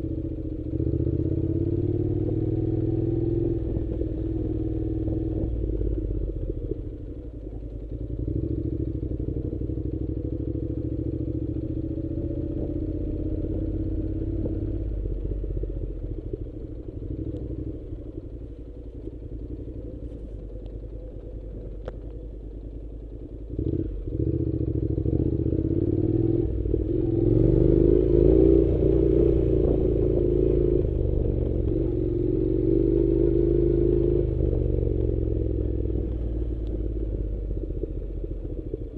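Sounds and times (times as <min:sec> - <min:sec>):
engine running steadily: 0:00.0 - 0:38.9.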